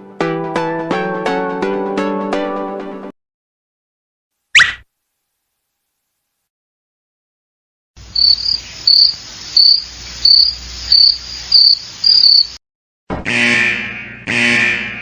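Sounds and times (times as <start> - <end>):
soft steady hiss: 8.0 - 12.2
cricket chirping: 8.0 - 12.6.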